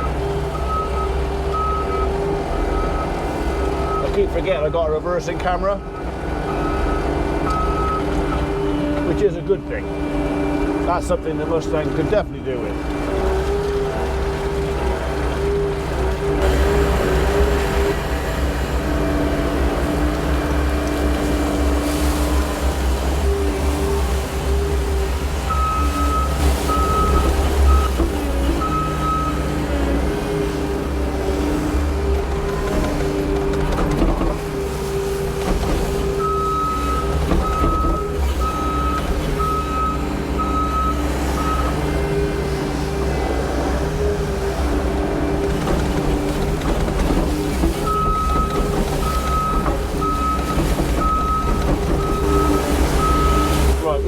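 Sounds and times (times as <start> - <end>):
reversing alarm beeping: 0.0 - 4.9, 5.8 - 8.6, 25.5 - 29.6, 36.1 - 42.2, 47.8 - 53.8
hydraulic whine: 0.0 - 54.0
low engine rumble: 0.0 - 54.0.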